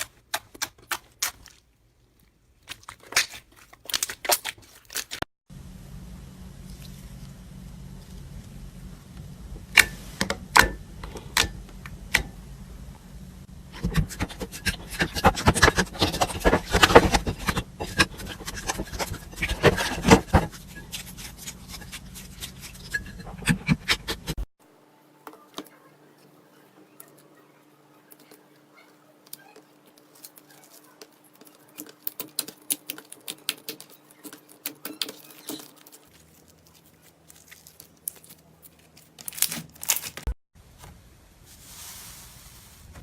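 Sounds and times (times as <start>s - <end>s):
faint steady hum: 5.5s - 34.7s
slime popping and crackling: 29.3s - 40.3s.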